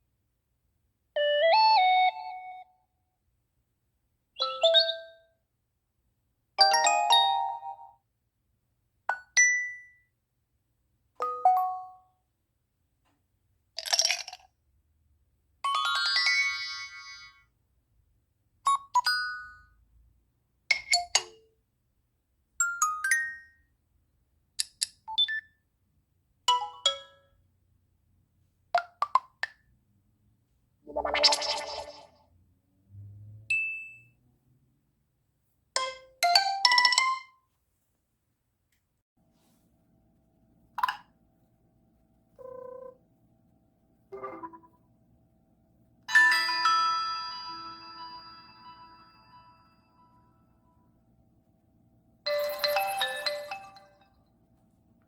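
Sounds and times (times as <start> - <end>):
phone notification tones: 42.4 - 43.0, 44.2 - 44.8, 52.3 - 54.0.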